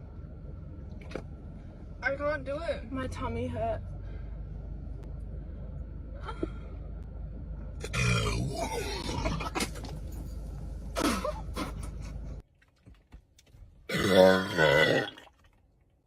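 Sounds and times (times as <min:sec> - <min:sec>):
person burping loudly: 0:07.8 - 0:09.6, 0:13.9 - 0:15.3.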